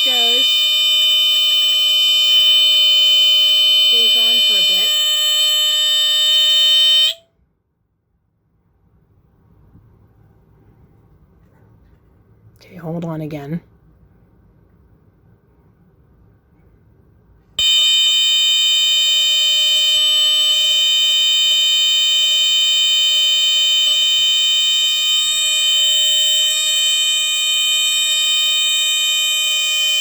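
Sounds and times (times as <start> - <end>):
smoke detector horn squealing: 0.0 - 7.3, 17.6 - 30.0.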